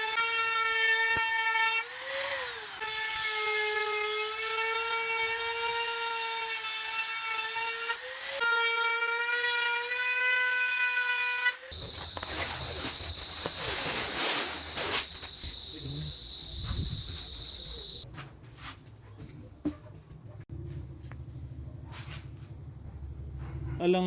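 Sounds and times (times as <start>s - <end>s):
high-pitched buzz: 11.7s - 18.0s
power tool motor whining: 11.7s - 18.0s
rustling hiss: 11.8s - 18.0s.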